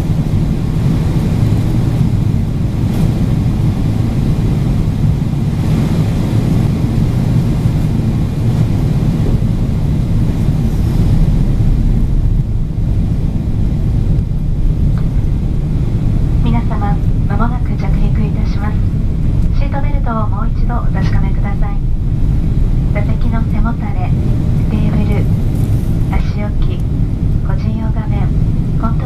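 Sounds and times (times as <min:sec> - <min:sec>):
airliner cabin jet engine rumble: 0:00.0 - 0:29.0.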